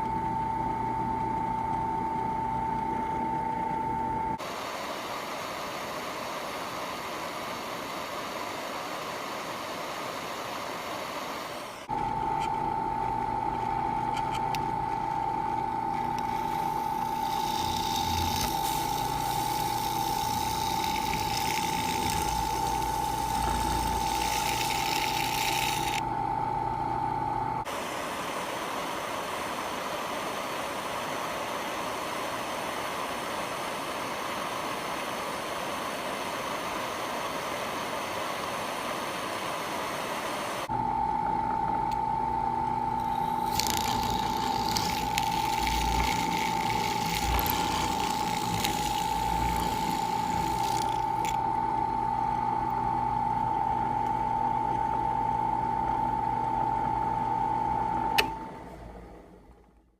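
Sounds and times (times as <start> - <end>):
electric drill whining: 15.9 - 26.0, 43.0 - 51.4
even hiss: 16.2 - 26.0, 43.0 - 51.4.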